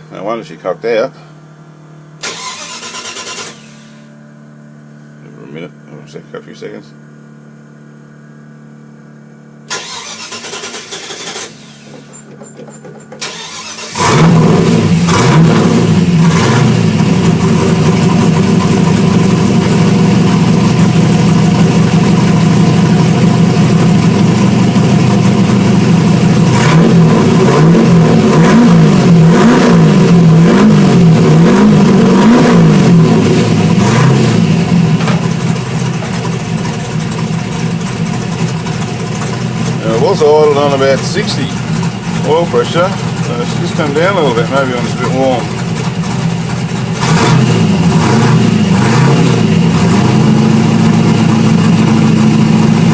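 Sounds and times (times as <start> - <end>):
engine cranking: 2.2 - 3.8, 9.7 - 15.5, 35.0 - 50.0
engine running and revving: 13.3 - 52.9.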